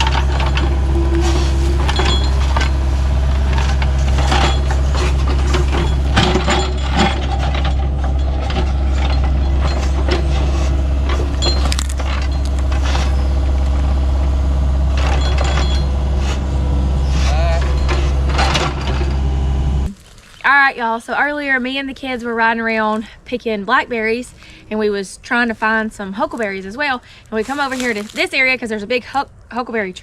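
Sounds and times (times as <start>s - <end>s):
rattles and knocks: 0.0s - 13.9s, 14.9s - 16.0s, 17.6s - 19.2s
vehicle engine humming: 0.0s - 19.9s.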